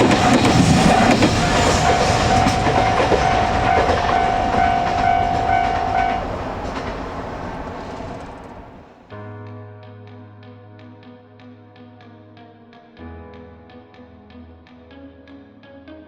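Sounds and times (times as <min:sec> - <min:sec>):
level crossing alarm ringing: 0:00.0 - 0:08.8
wheels clattering over rail joints: 0:00.0 - 0:09.1
freight train rolling past: 0:00.0 - 0:09.2.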